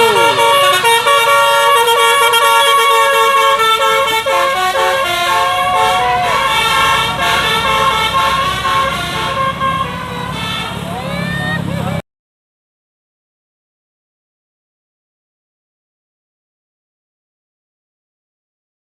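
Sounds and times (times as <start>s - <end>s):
bus musical horn tune: 0.0s - 12.0s.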